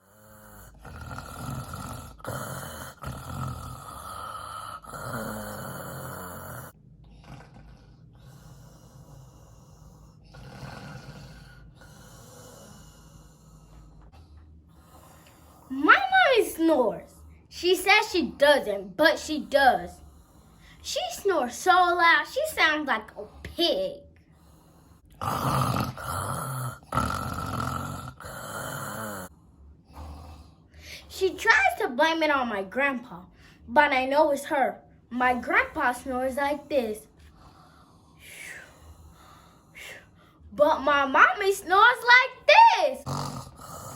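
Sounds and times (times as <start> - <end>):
person snoring: 0.0 - 14.1, 24.4 - 29.3, 43.0 - 43.9.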